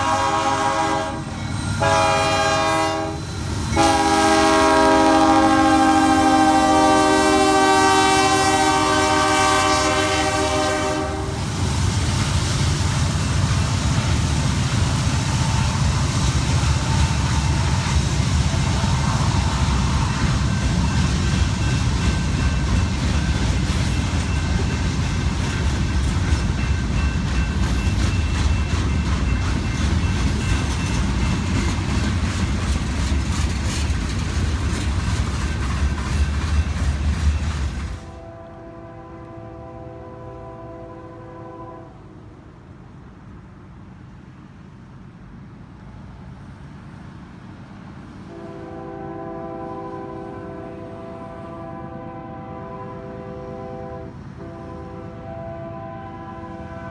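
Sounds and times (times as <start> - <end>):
locomotive air horn chord: 0.0 - 11.4, 38.1 - 42.0, 48.3 - 56.9
freight train rumbling past: 0.0 - 56.9.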